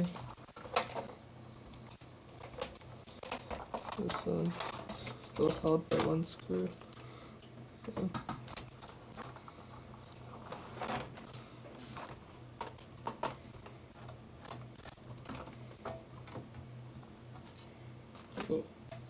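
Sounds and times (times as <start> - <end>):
keyboard parts clicking and tapping: 0.0 - 11.4, 12.0 - 17.6
low steady hum: 0.0 - 19.0.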